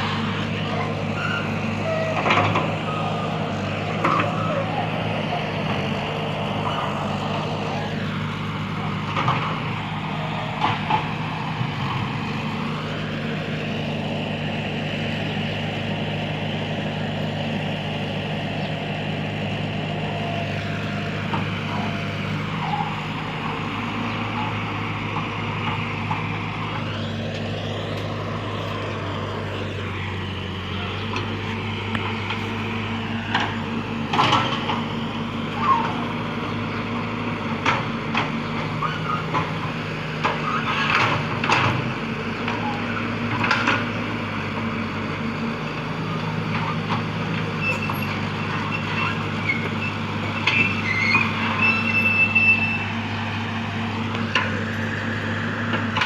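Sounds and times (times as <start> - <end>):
excavator diesel engine running: 0.0 - 56.0
thin high squeal: 50.5 - 52.9.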